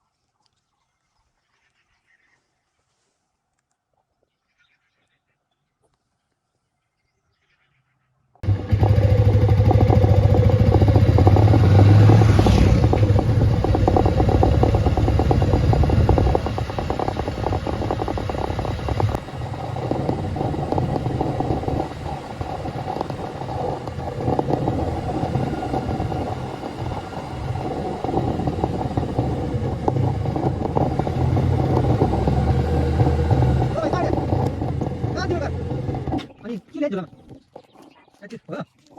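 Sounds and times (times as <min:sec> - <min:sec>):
vehicle engine running: 0:08.4 - 0:36.4
road rumble and clatter: 0:08.4 - 0:36.9.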